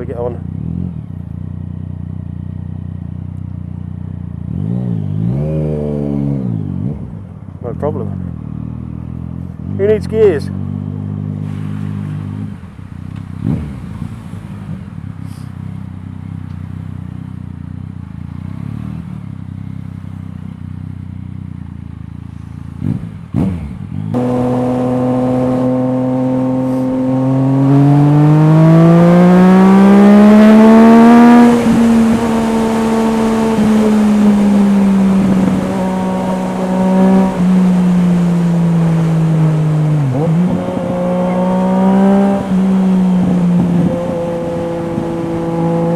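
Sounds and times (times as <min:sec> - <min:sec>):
motorcycle engine revving: 0:00.0 - 0:45.9
wind noise: 0:31.2 - 0:45.9.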